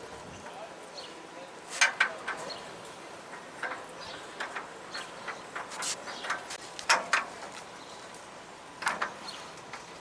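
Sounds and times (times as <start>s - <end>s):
metal ramps clicking and knocking: 1.8s - 7.6s, 8.8s - 9.9s.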